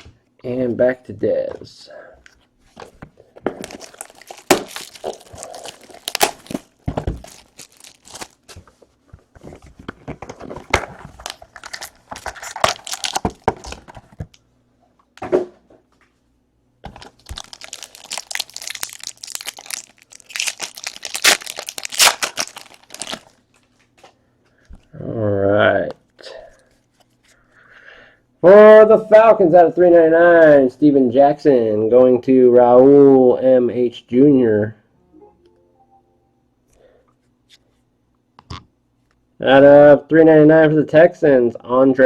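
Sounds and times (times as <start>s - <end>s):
packaging torn and crinkled: 3.6s - 8.6s, 10.7s - 14.0s, 16.9s - 23.5s.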